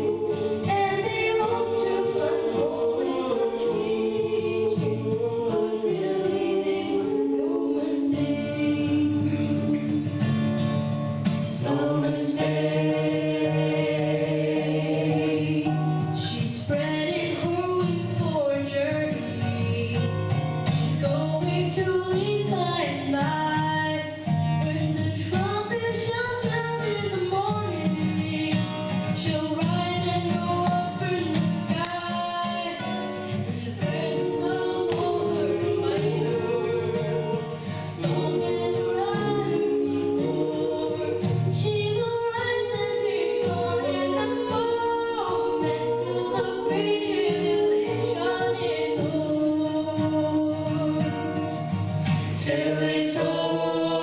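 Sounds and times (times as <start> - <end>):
group singing in harmony: 0.0 - 54.0.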